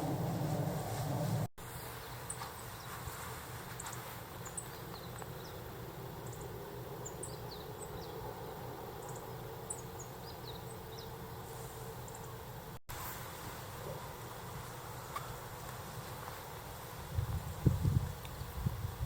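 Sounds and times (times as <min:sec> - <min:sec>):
steady low hum: 0:00.0 - 0:19.0
small birds chirping: 0:01.8 - 0:12.5.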